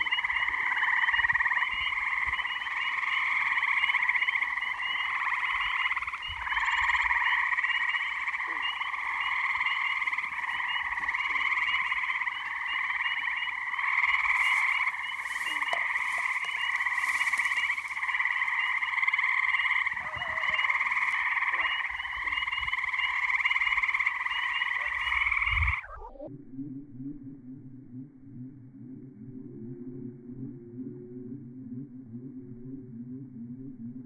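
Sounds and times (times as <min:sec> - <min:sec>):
tree frogs trilling: 0:00.0 - 0:26.0.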